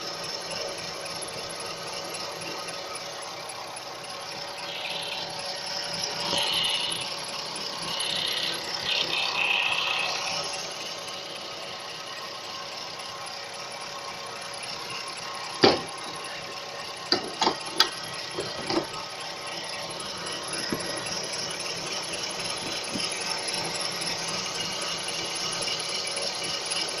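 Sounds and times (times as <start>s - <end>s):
car running: 0.0s - 27.0s
high whistle: 4.6s - 7.2s.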